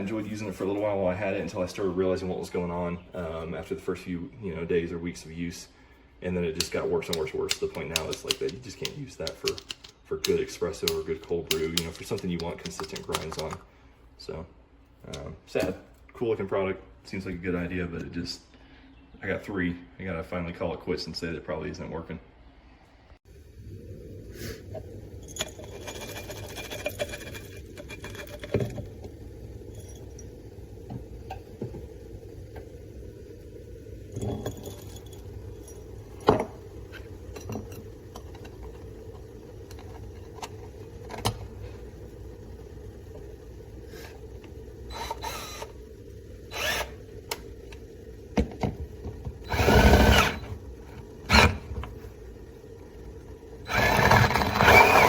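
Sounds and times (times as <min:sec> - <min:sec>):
steady low hum: 0:00.0 - 0:55.0
scattered clicks and knocks: 0:07.1 - 0:13.6.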